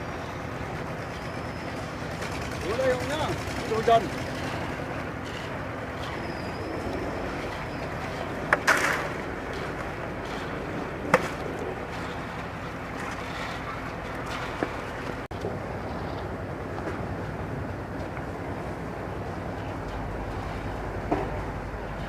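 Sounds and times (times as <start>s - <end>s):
machine engine running: 0.3s - 15.1s.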